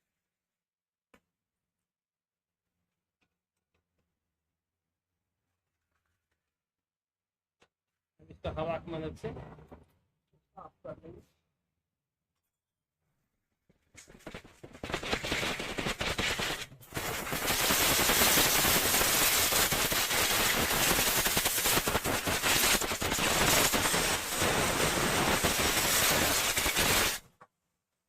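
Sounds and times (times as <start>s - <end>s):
compressed air hissing: 15.9s - 27.2s.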